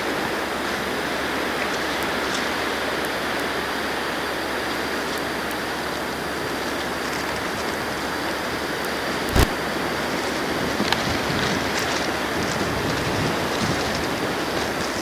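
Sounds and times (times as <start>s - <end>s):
snowstorm wind rushing: 9.2s - 15.0s.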